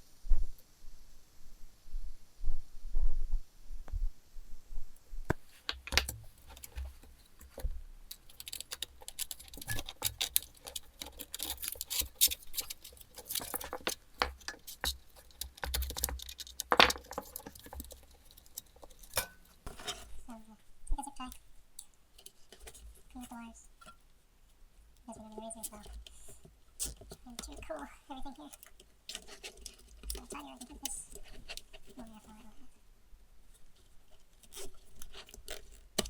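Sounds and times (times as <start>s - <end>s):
small metal parts clicking and rattling: 5.7s - 20.1s, 21.3s - 24.1s, 25.0s - 32.4s, 33.8s - 36.0s.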